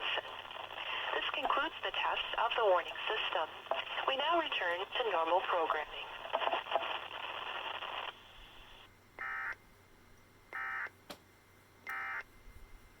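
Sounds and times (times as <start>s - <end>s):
radio static: 0.0s - 8.9s.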